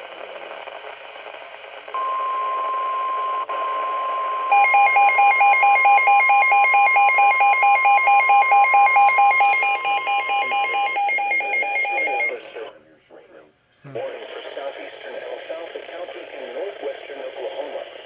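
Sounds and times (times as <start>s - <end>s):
steady warning alarm tone: 2.0s - 12.4s
electronic alert beeping: 4.6s - 12.3s.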